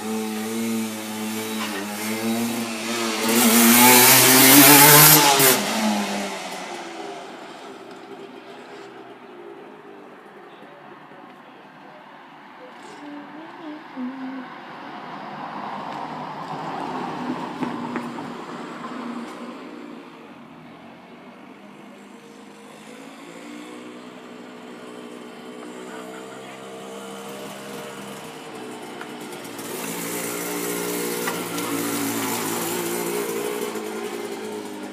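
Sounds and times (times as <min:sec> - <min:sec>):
two-stroke motorcycle engine: 0:00.0 - 0:10.3, 0:17.5 - 0:34.9.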